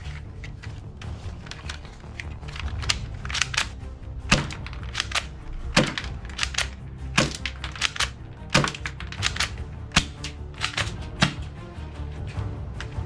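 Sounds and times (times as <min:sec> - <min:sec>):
background music: 0:00.0 - 0:13.0
sharp clicks and clacks: 0:01.5 - 0:11.5.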